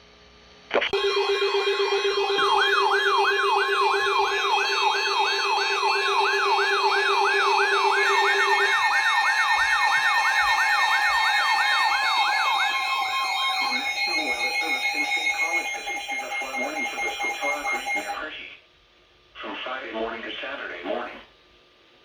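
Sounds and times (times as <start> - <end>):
electronic siren yelp: 0.9 - 18.2
steady electronic tones: 1.0 - 18.2.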